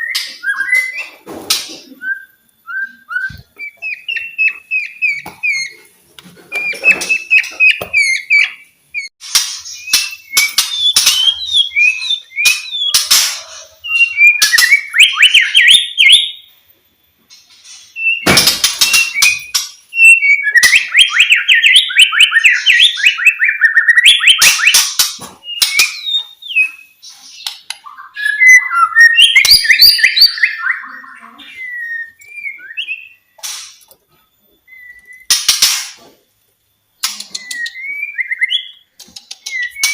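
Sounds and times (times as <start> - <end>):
bird singing whistles and trills: 0.0 - 1.2, 1.9 - 5.8, 6.5 - 16.4, 17.9 - 24.8, 25.4 - 33.3, 34.6 - 35.4, 37.2 - 39.9
sharp bird clicks: 27.4 - 28.0, 37.0 - 38.1, 38.7 - 39.9.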